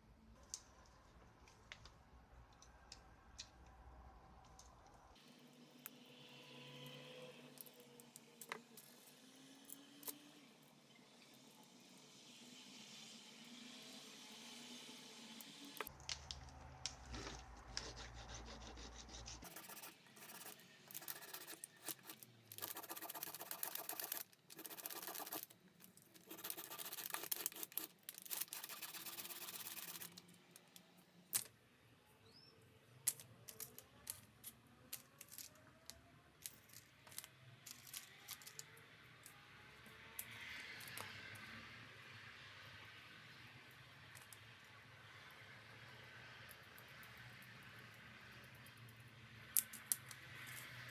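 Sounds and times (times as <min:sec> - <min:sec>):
rubbing and scraping on hard surface: 0:17.1 - 0:30.2.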